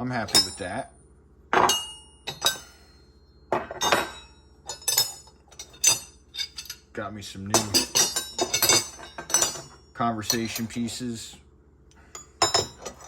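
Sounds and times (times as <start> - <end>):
steel hand tools clanking: 0.2 - 0.8, 1.6 - 2.9, 3.6 - 6.8, 7.6 - 10.8, 12.2 - 13.0.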